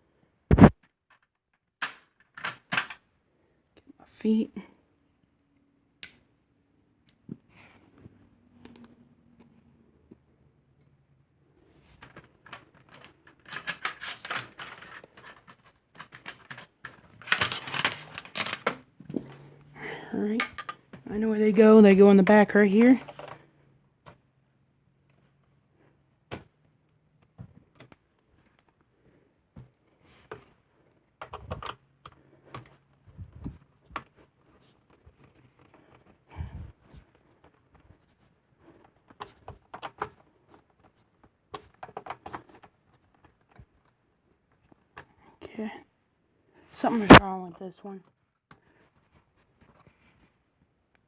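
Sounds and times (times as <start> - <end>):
plastic clicks and knocks: 0.5 - 3.0
sharp plastic clicks: 6.0 - 6.3
plastic packaging rustling: 12.7 - 19.4.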